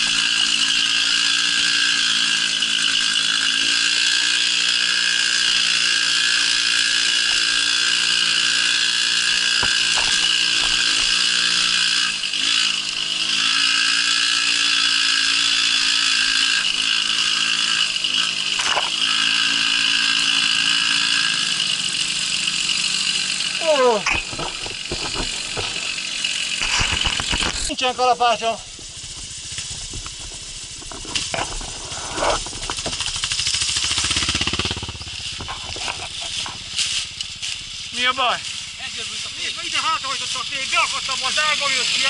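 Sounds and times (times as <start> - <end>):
moped two-stroke engine running: 0.0 - 42.0.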